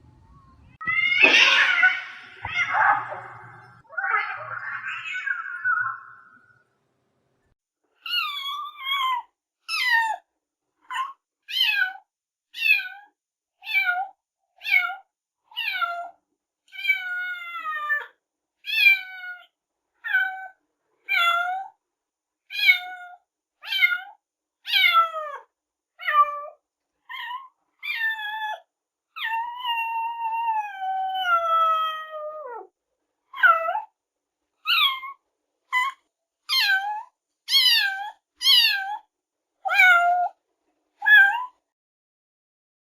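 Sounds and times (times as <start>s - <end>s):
cat meowing: 0.8s - 6.4s, 36.5s - 39.0s.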